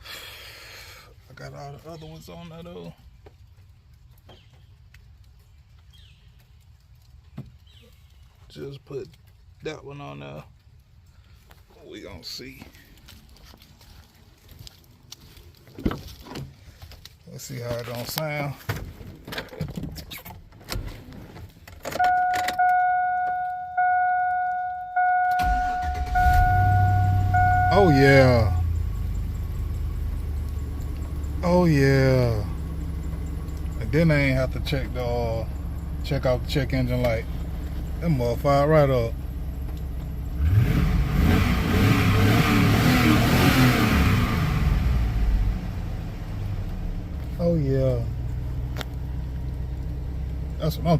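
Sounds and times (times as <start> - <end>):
car engine starting and rumbling: 15.6 - 50.9
keys jangling in ignition: 21.8 - 31.4
dashboard warning chime: 22.0 - 38.9.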